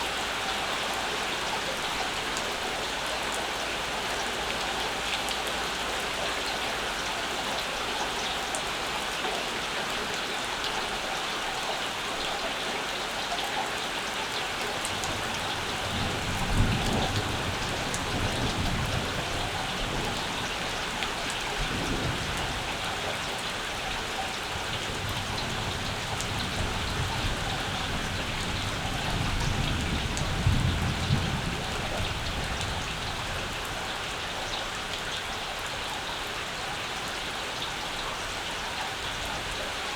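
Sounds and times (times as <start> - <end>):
steady rain falling: 0.0 - 39.9.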